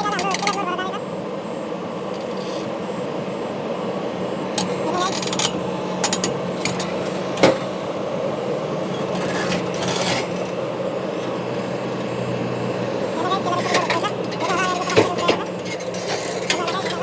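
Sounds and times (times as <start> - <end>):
diesel engine running: 0.0 - 17.0
excavator bucket clanking: 13.6 - 17.0.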